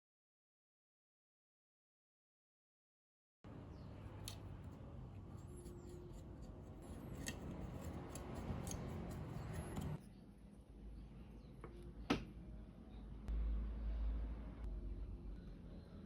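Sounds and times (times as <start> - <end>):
scraping and rubbing: 4.6 - 10.0.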